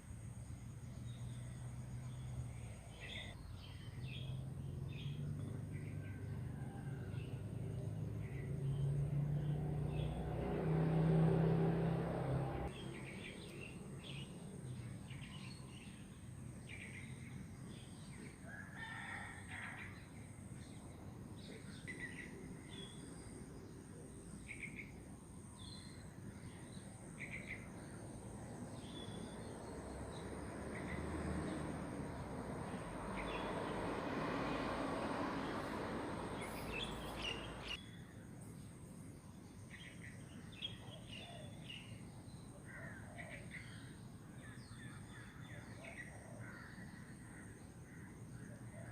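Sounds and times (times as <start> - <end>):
rooster crowing: 18.5 - 19.9
birds chirping: 28.8 - 37.9.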